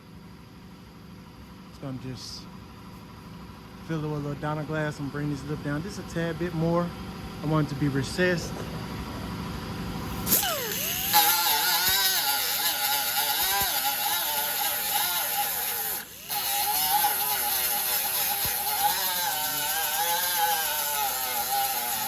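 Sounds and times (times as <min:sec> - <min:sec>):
grinder whining on metal: 0:10.0 - 0:22.0.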